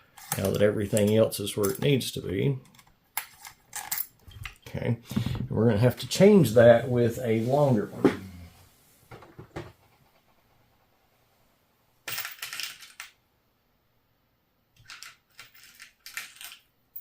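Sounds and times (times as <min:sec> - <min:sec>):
small screws clinking and rattling: 0:00.1 - 0:01.9, 0:02.6 - 0:04.6, 0:12.1 - 0:13.2, 0:14.8 - 0:17.0
metal parts clicking: 0:02.6 - 0:04.6, 0:14.8 - 0:17.0.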